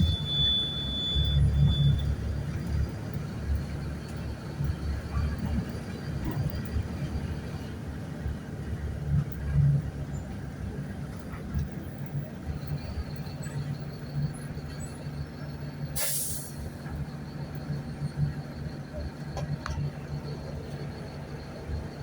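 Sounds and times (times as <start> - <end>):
faint high whistle: 0.0 - 2.2
diesel bus engine drone: 0.0 - 22.0
air brakes hiss: 15.9 - 16.8.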